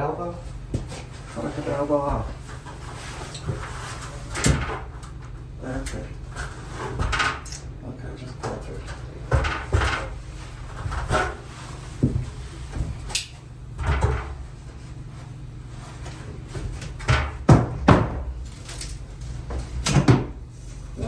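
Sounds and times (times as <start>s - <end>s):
demolition knocks and bangs: 17.0s - 18.4s.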